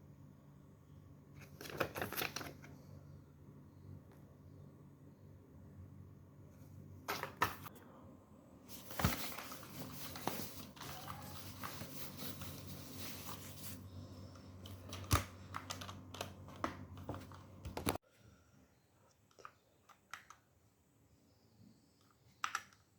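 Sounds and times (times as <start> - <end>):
packaging rustling: 8.7 - 13.8.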